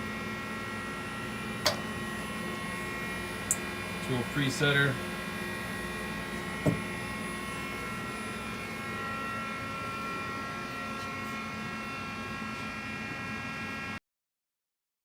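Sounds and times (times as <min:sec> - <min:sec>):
lathe running with whine: 0:00.0 - 0:14.0
sharp knock: 0:06.6 - 0:06.9.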